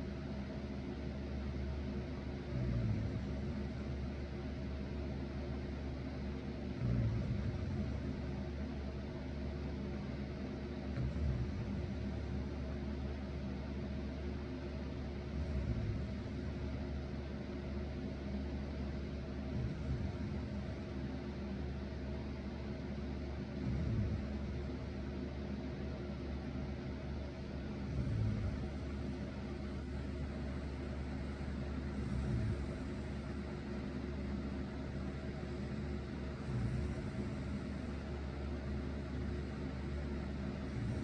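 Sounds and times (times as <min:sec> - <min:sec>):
electric fan running: 0:00.0 - 0:41.0
person snoring: 0:06.8 - 0:08.2, 0:23.6 - 0:24.5, 0:27.8 - 0:33.8, 0:34.9 - 0:38.2.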